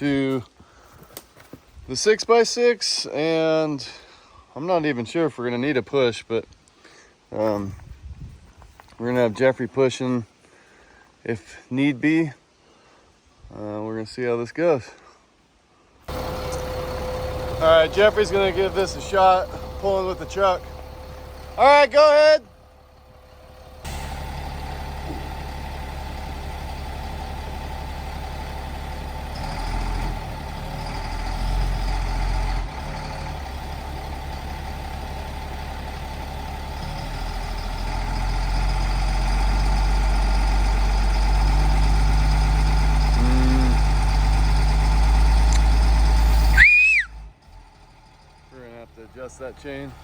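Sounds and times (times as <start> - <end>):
vehicle engine revving under load: 16.1 - 50.0.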